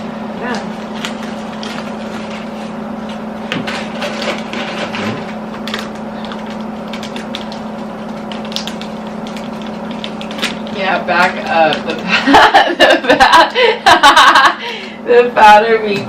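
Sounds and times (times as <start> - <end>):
steady low hum: 0.0 - 16.0
crunching of snack chewing: 4.0 - 10.8.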